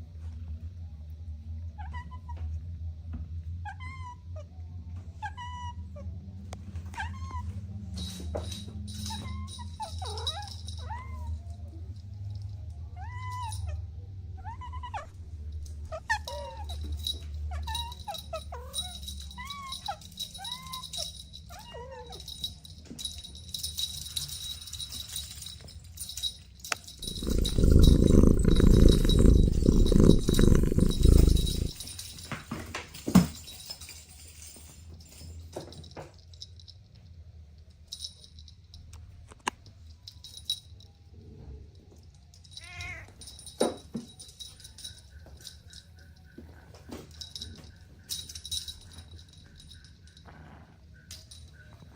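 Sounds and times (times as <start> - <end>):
kittens mewing: 27.0 - 31.8
loud low rumbling: 27.0 - 31.8.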